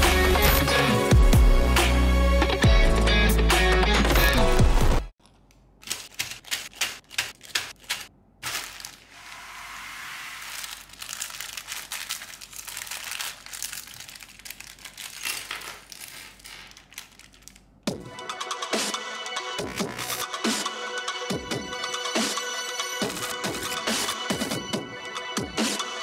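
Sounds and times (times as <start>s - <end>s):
packaging crinkling and tearing: 5.8s - 17.9s.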